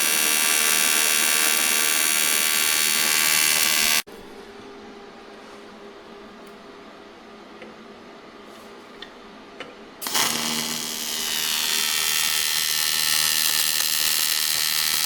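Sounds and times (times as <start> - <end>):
angle grinder running: 0.0 - 4.0, 10.0 - 15.0.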